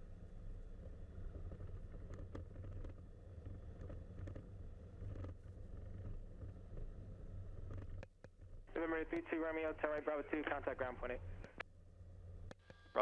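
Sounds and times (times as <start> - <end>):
faint clicks and knocks: 0.8 - 9.3.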